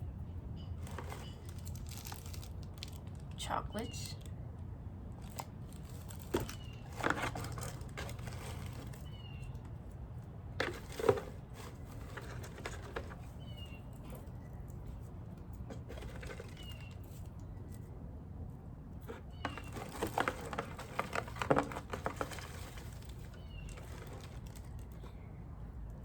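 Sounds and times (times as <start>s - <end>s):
candy packaging rustling: 0.8s - 3.4s, 5.2s - 9.7s, 10.6s - 15.0s, 15.6s - 17.4s, 19.0s - 25.1s.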